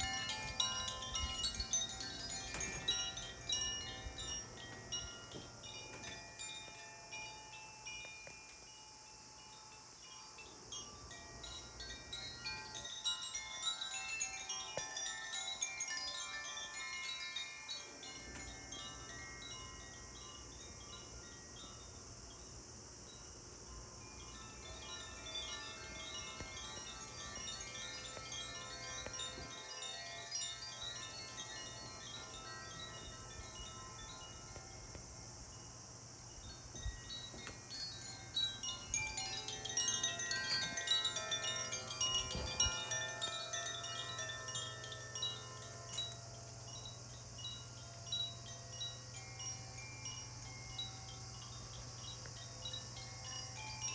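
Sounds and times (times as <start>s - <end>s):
chimes ringing: 0.0s - 9.7s, 23.9s - 53.9s.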